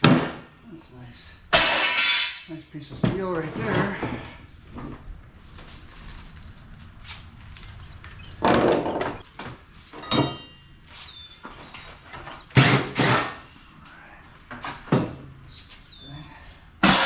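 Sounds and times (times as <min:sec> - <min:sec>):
knocks and scrapes of parts: 0:01.5 - 0:10.6, 0:16.8 - 0:17.0
metallic ring: 0:10.0 - 0:10.7
loud bangs: 0:16.8 - 0:17.0.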